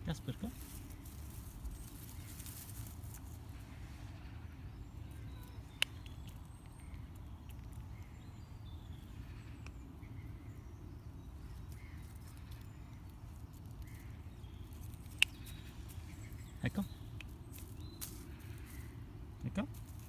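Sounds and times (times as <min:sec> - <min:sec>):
faint bird chirps: 0:00.1 - 0:19.6.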